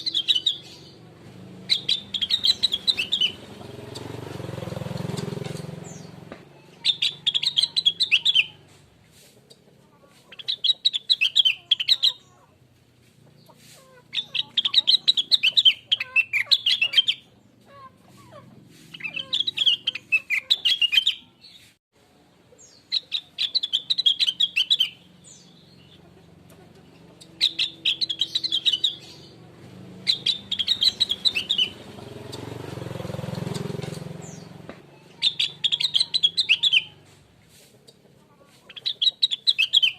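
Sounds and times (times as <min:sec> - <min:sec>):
songbird twittering: 0:00.0 - 0:08.6, 0:10.3 - 0:12.4, 0:14.1 - 0:17.5, 0:18.9 - 0:21.7, 0:22.6 - 0:26.1, 0:26.9 - 0:37.1, 0:38.7 - 0:39.9.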